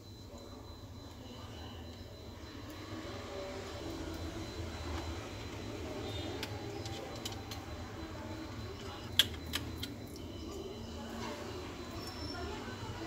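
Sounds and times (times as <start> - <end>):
sharp clicks of laptop parts: 6.4 - 7.6.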